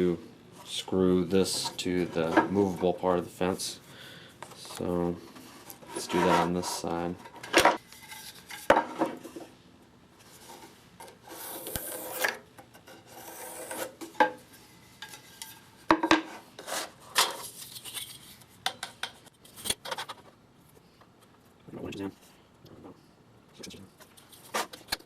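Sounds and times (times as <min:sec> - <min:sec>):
wood rubbing and scraping: 0:05.2 - 0:07.4.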